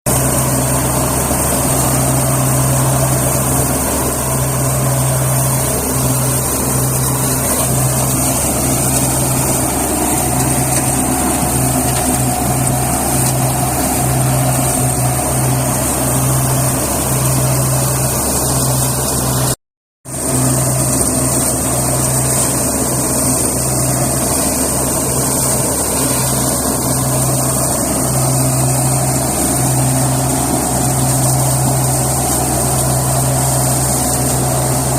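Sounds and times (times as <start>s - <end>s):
engine-driven cutter droning: 0.1s - 34.9s.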